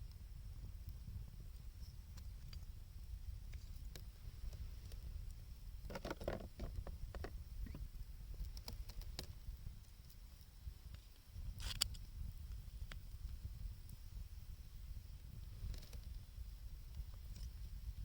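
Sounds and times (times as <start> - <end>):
blizzard wind rumble: 6.6 - 18.0.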